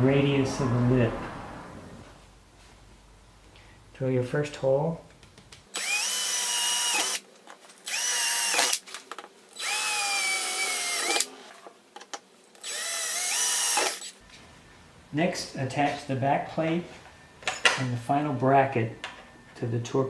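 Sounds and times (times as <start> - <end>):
electric drill boring: 5.8 - 7.2, 7.8 - 8.8, 9.6 - 11.3, 12.6 - 14.2.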